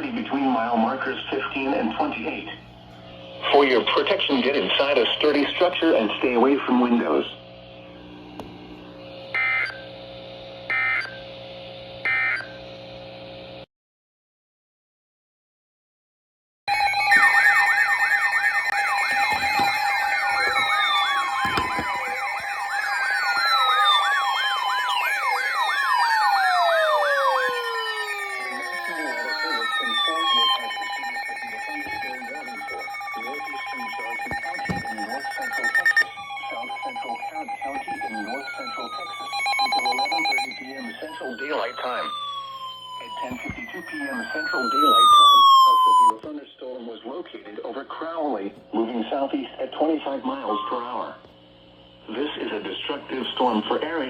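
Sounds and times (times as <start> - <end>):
radio hum: 0.0 - 13.6, 18.3 - 54.0
digital data tone bursts: 9.4 - 9.9, 16.7 - 46.1.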